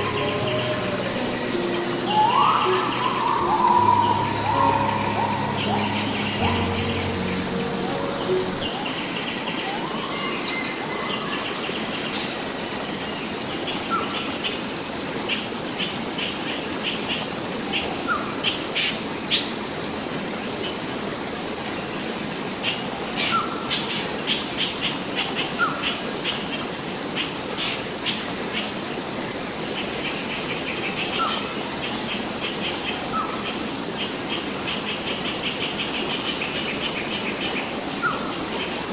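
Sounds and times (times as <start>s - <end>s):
birds chirping: 0.0s - 10.9s
flowing water: 0.0s - 38.9s.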